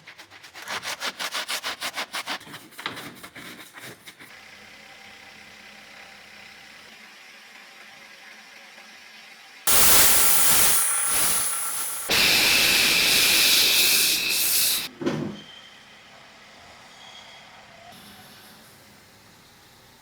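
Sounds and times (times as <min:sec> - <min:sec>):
compressed air hissing: 0:09.7 - 0:14.9.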